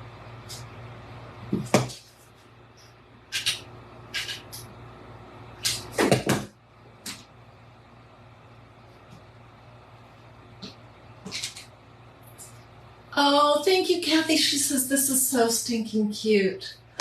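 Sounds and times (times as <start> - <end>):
objects knocking on work table: 1.5 - 2.0, 6.0 - 6.5.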